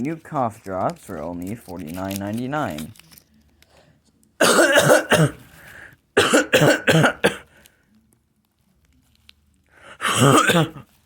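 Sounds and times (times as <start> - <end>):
person coughing: 4.4 - 5.5, 6.2 - 7.6, 10.0 - 11.0.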